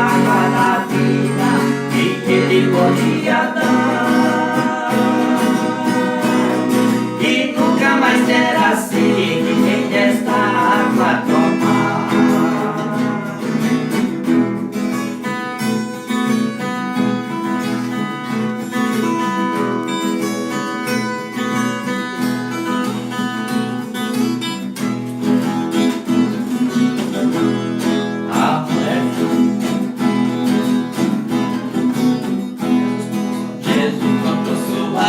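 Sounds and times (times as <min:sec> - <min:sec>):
person singing: 0:00.0 - 0:14.4, 0:28.2 - 0:29.5, 0:33.6 - 0:35.0
acoustic guitar strumming: 0:00.0 - 0:35.0.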